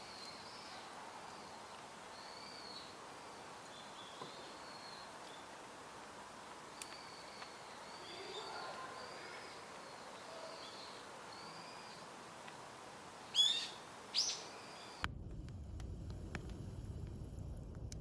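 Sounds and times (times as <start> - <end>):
background hiss: 0.0 - 18.0
low rumbling noise: 15.0 - 18.0.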